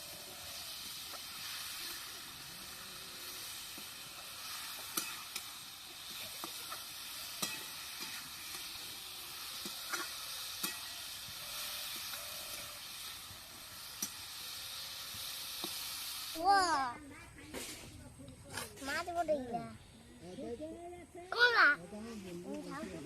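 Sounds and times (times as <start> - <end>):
food sizzling in hot oil: 0.0 - 17.0
utensil clicking against pan: 4.9 - 5.5.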